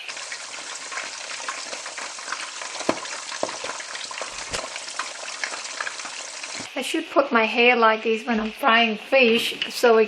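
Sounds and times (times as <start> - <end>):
fish sizzling in hot oil: 0.0 - 6.7
oil popping: 0.0 - 6.7.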